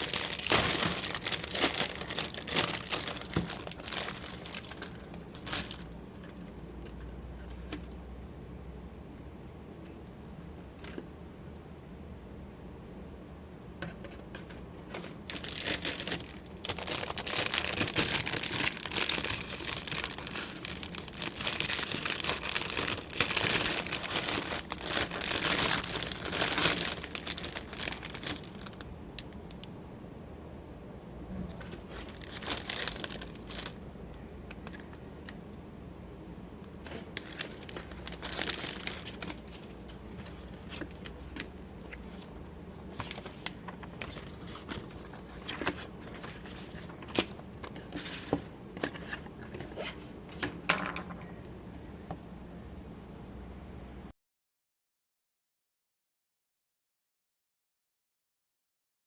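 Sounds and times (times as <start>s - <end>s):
packaging crinkling and rustling: 0.0s - 8.0s, 13.9s - 29.7s, 31.5s - 35.6s, 36.7s - 51.3s.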